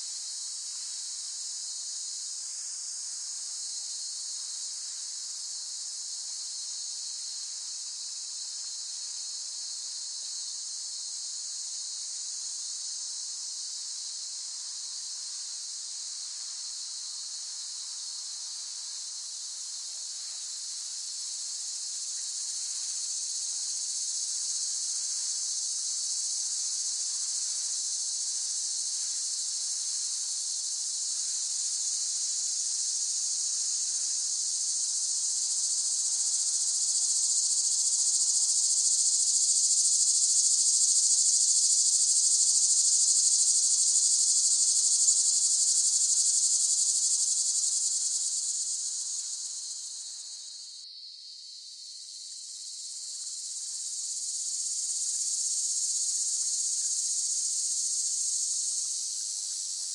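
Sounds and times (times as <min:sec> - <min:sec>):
cicadas buzzing: 0:29.7 - 0:59.9.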